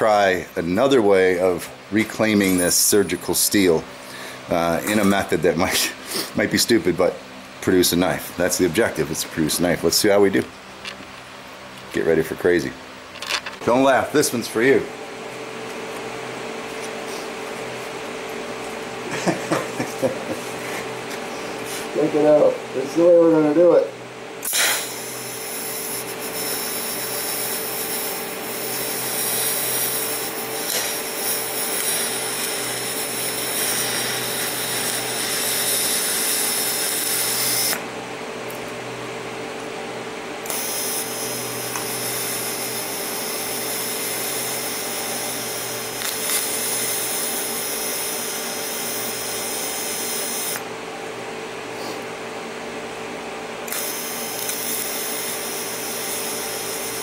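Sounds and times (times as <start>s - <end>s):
power tool motor hum: 24.4s - 37.9s, 40.4s - 50.7s, 53.6s - 57.0s.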